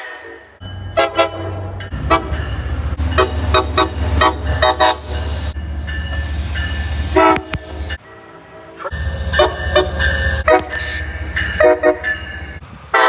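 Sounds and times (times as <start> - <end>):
locomotive engine rumble: 0.6 - 13.0
locomotive horn short toots: 0.9 - 8.0, 8.9 - 13.0
air hiss: 5.5 - 8.0, 8.9 - 12.6.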